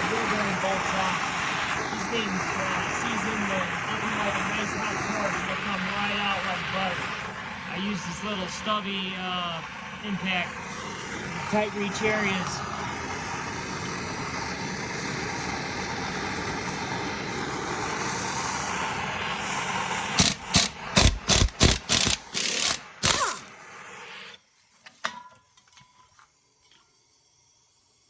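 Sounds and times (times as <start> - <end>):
torch burning with a hiss: 0.0 - 24.4
impact wrench hammering: 20.2 - 23.4.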